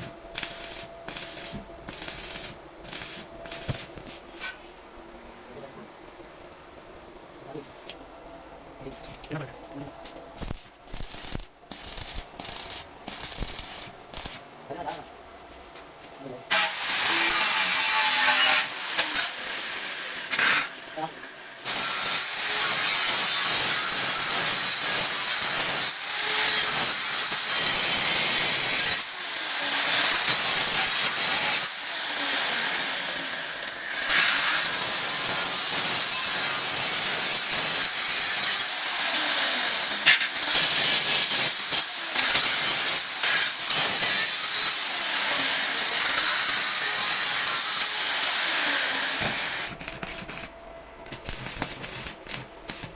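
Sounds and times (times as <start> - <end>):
angle grinder on steel: 16.5 - 50.5.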